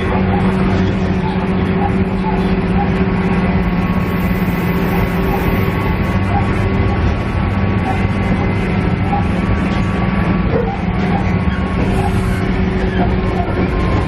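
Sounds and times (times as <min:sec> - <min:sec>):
diesel railcar engine drone: 0:00.0 - 0:14.0
lower hum: 0:00.8 - 0:08.5.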